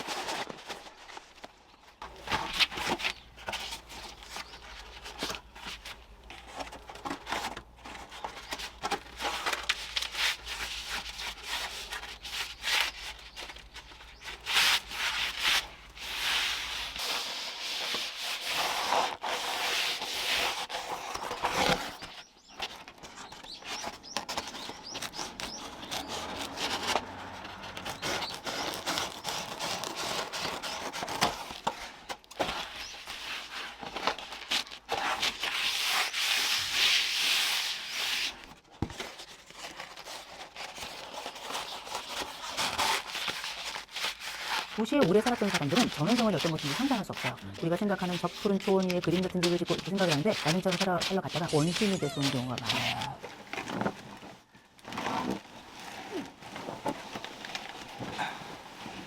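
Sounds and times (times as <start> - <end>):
rubbing strokes on a surface: 14.2 - 21.0.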